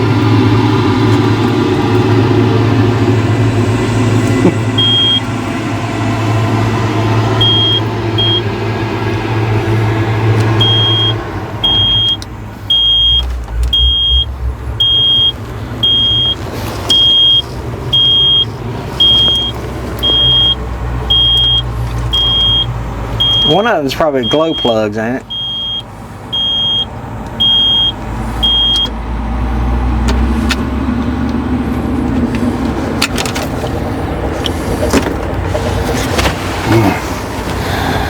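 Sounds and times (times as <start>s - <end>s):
low mechanical hum: 0.0s - 38.0s
warning buzzer beeping: 4.8s - 5.3s, 7.4s - 8.5s, 10.6s - 25.8s, 26.4s - 28.9s.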